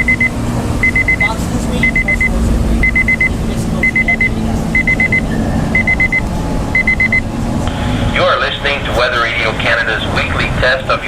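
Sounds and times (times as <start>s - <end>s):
weather radio alert beeps: 0.0s - 7.3s
low background rumble: 0.0s - 11.0s.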